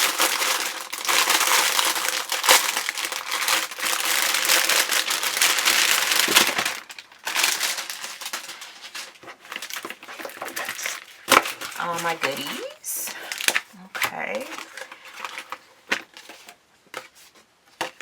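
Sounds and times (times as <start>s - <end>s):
packaging bag crinkling: 0.0s - 17.1s.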